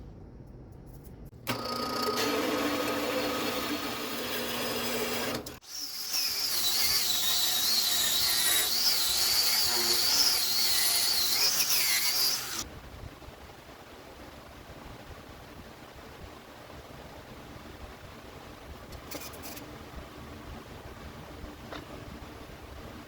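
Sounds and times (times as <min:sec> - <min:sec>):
power tool motor whining: 0:01.5 - 0:12.6.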